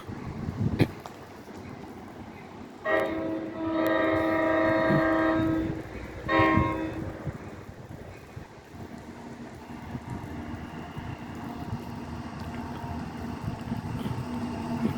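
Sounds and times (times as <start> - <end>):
train running rumble: 0.0 - 14.9
train air horn blasts: 2.8 - 7.5.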